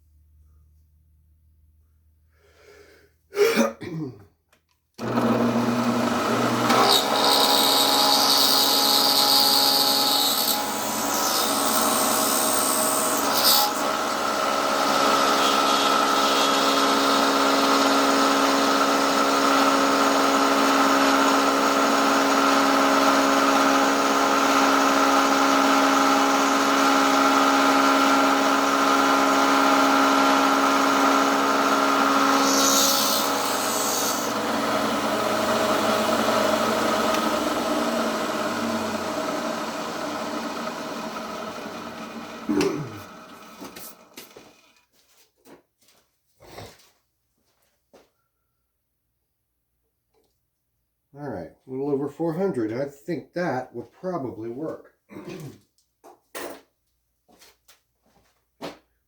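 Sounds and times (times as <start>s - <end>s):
machine tool motor running: 5.0s - 44.4s
cutter scraping and hissing: 6.7s - 13.9s, 31.6s - 34.4s.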